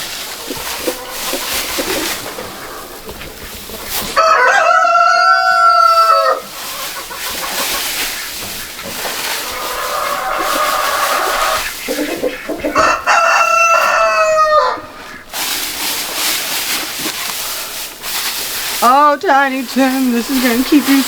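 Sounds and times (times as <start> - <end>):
rooster crowing: 4.2 - 6.6, 9.3 - 15.2
steady background hiss: 6.3 - 21.0.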